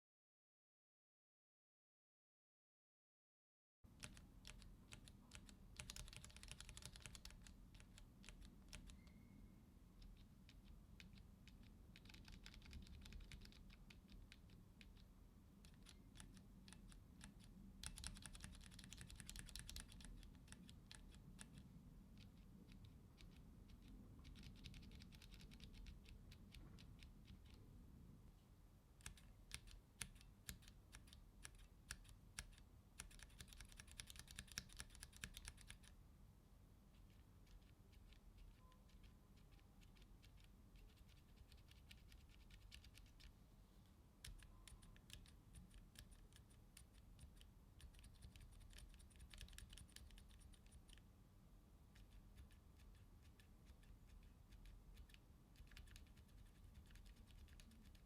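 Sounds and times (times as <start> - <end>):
typing on mechanical keyboard: 4.0 - 9.2, 10.0 - 27.6, 29.0 - 35.9, 37.0 - 43.3, 44.2 - 51.0, 52.0 - 58.0.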